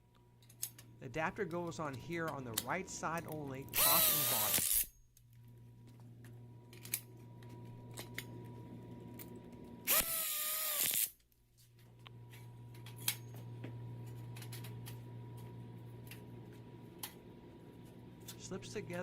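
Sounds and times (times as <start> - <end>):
power drill driving a screw: 3.8 - 4.9, 9.8 - 11.1.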